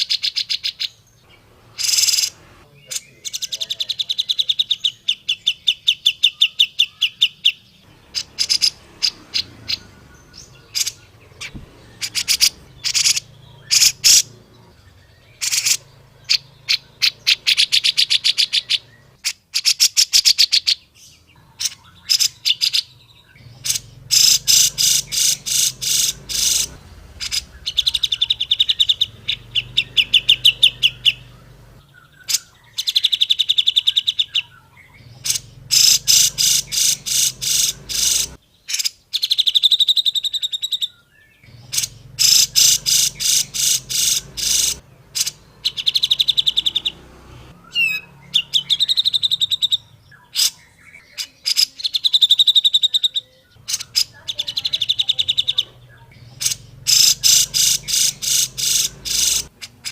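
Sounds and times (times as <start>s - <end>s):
bird chattering trills: 0.0s - 59.9s.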